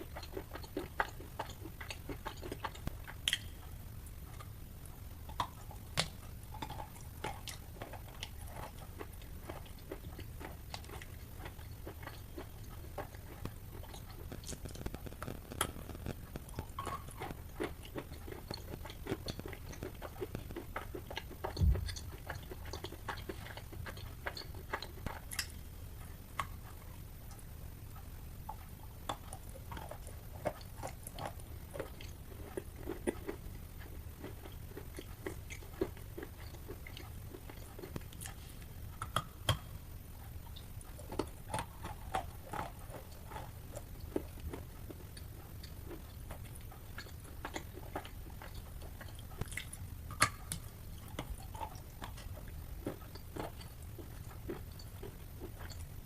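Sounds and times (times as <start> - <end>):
chewing wet chalk: 0.0 - 56.0.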